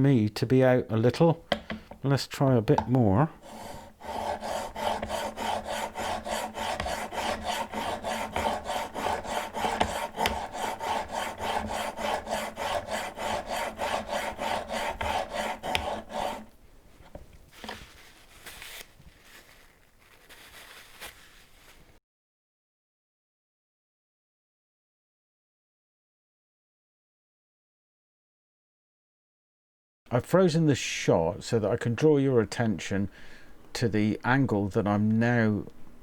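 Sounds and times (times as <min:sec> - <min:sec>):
chisel scraping on sharpening stone: 0:03.4 - 0:16.5
faint handling sounds: 0:16.6 - 0:22.0.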